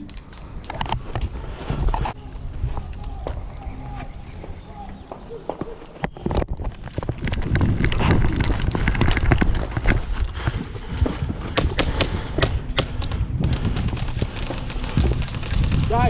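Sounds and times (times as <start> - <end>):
gear jostling: 5.5 - 16.0
heavy running footsteps: 8.9 - 15.9
pellet impacts: 11.3 - 16.0
airsoft gunfire clicks: 11.6 - 16.0.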